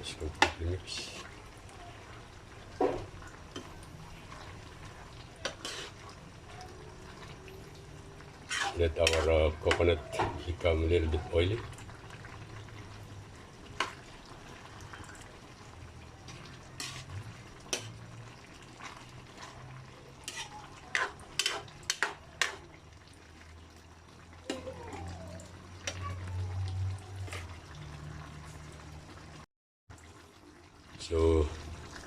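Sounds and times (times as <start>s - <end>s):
utensil clinking against a pot: 8.5s - 10.5s, 20.2s - 22.6s.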